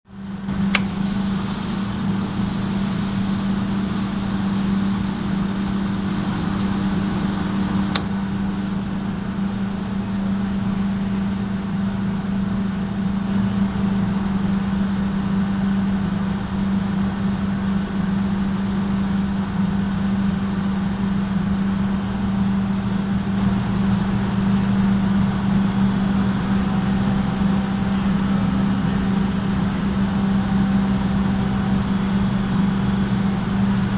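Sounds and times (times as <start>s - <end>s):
dryer motor humming: 0.4s - 11.1s
sharp click: 0.7s - 1.0s, 7.9s - 8.2s.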